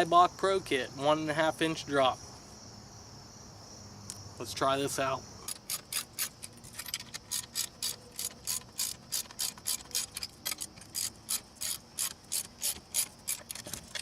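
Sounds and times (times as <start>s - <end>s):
ratchet wrench clicking: 5.4s - 14.0s.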